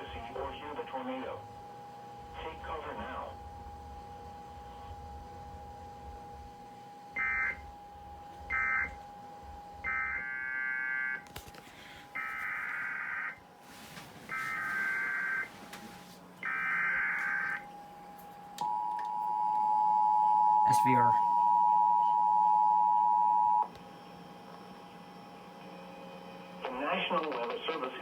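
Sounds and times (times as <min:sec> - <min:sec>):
faint steady tone: 0:17.0 - 0:23.8.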